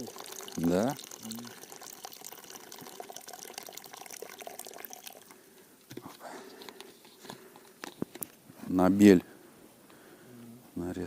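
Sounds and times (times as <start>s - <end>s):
water trickling and dripping: 0.0s - 5.4s.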